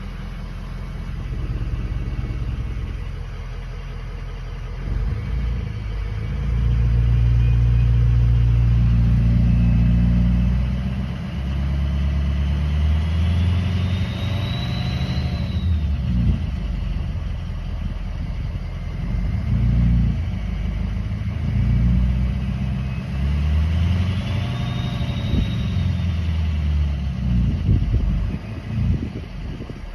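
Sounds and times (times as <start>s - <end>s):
engine revving: 0.8s - 3.6s, 4.6s - 29.9s
high whine: 22.7s - 26.5s.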